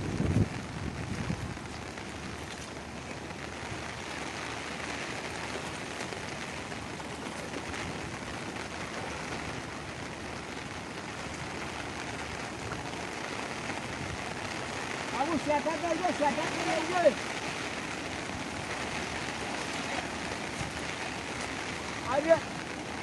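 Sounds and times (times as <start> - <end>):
heavy rain: 0.0 - 23.0
rushing floodwater: 0.0 - 23.0.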